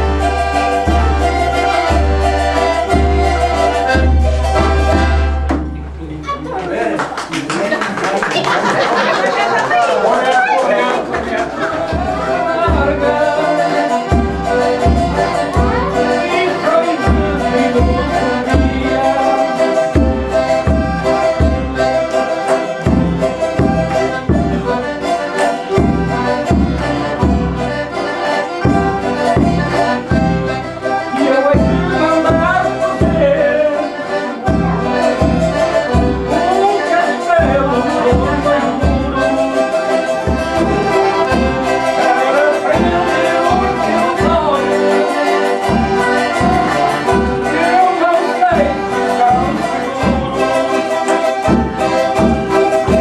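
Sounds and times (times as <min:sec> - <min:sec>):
accordion folk music: 0:00.0 - 0:53.0.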